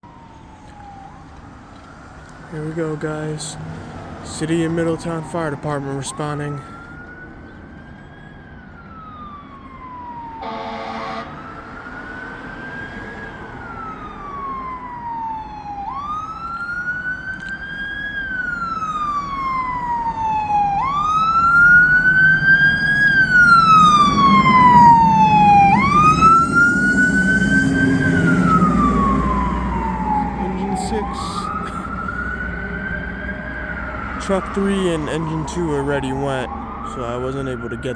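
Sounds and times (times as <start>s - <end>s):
fire engine siren wailing: 0.0s - 37.9s
truck engine rumble: 0.1s - 7.0s, 17.6s - 37.9s
horn blast: 10.4s - 11.4s.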